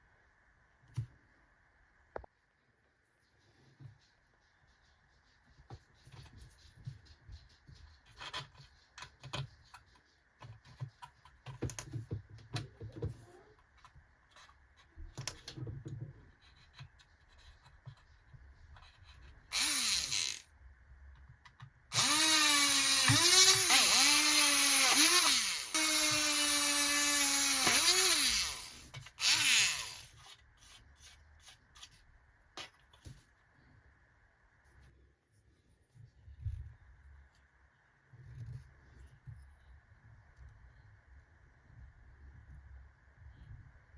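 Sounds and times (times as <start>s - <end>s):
rotary power tool whining on metal: 19.5s - 20.4s, 21.9s - 30.1s.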